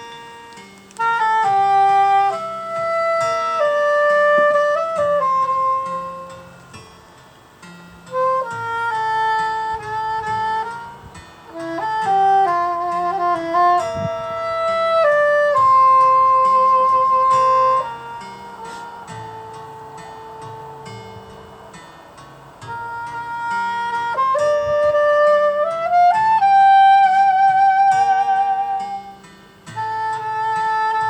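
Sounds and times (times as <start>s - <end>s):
saxophone slow melody: 0.0s - 31.0s.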